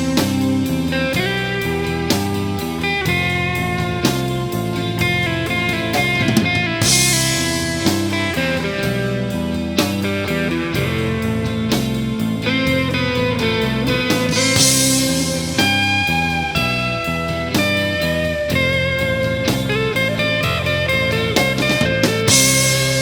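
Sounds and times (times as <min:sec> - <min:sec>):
bass and drum kit: 0:00.0 - 0:23.0
electric guitar playing: 0:00.0 - 0:23.0
cymbal crash: 0:06.0 - 0:08.5.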